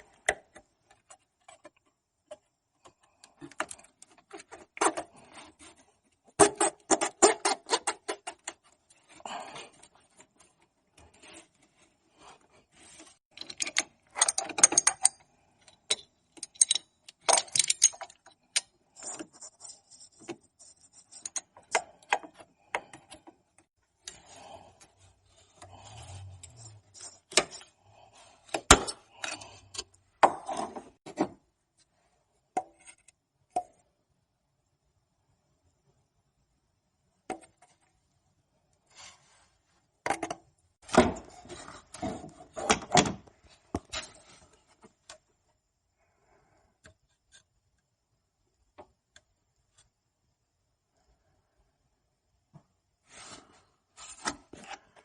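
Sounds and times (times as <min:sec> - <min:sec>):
metallic clicks and clinks of tools: 0:13.4 - 0:18.7.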